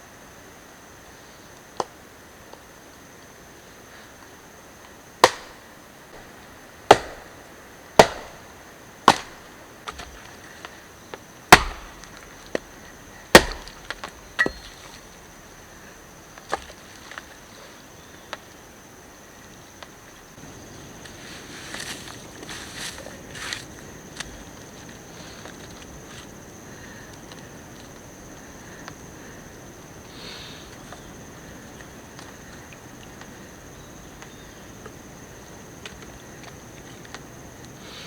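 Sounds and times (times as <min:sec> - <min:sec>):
wood being chopped: 0:05.2 - 0:05.6, 0:06.2 - 0:07.4, 0:08.0 - 0:10.3, 0:11.5 - 0:15.1.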